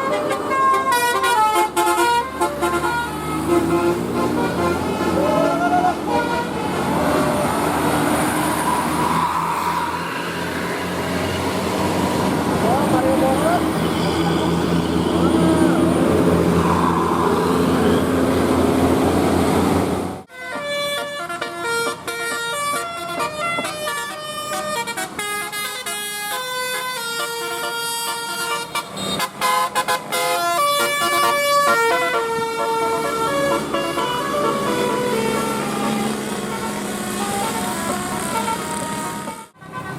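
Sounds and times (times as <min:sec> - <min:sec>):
musical bus air horn: 0:00.0 - 0:07.4, 0:13.4 - 0:16.9, 0:20.3 - 0:39.9
bus engine running: 0:00.0 - 0:39.9.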